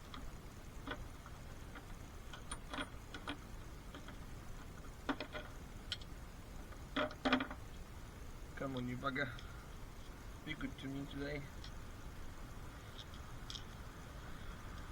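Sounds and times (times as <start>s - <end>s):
hand tools and metal parts clicking: 0.0s - 6.1s, 12.9s - 13.8s.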